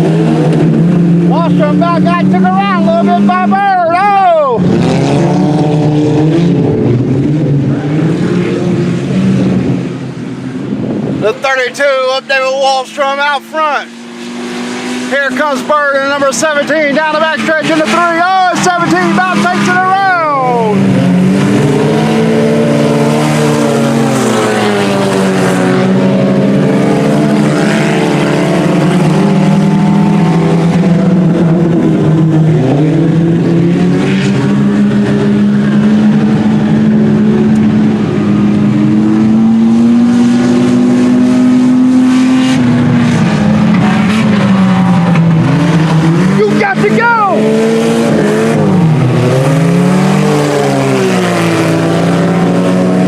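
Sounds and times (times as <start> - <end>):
race car engines: 0.0 - 53.0.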